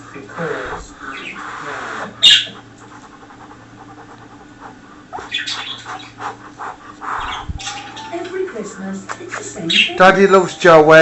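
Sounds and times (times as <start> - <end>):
cockatiel harsh call: 0.6 - 2.6.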